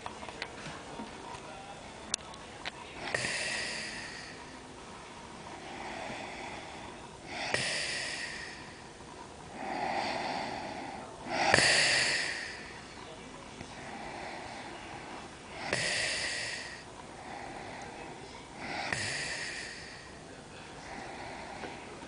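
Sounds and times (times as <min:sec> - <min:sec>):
soft breaths: 0:00.0 - 0:22.0
woman snoring: 0:03.0 - 0:04.2, 0:09.5 - 0:12.7, 0:15.6 - 0:17.8, 0:18.5 - 0:20.0.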